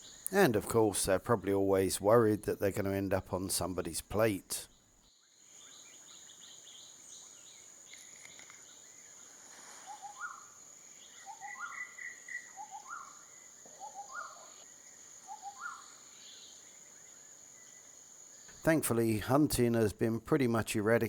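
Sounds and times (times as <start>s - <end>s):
bird whistling calls: 11.1s - 14.6s.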